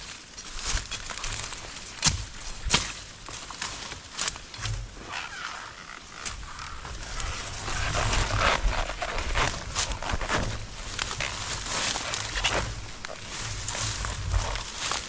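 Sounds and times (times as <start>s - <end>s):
leaves and brush rustling: 0.0s - 15.0s
low microphone rumble: 6.4s - 15.0s.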